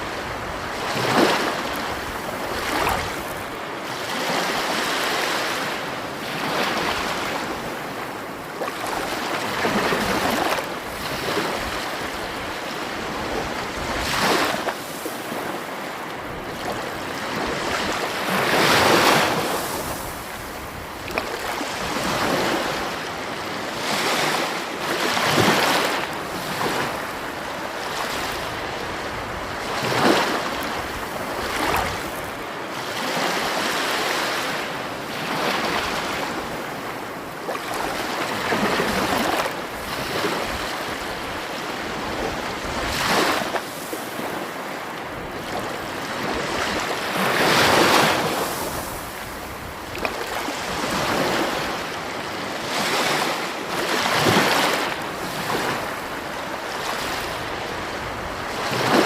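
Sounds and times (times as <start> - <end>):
sea waves breaking on shore: 0.0 - 59.0.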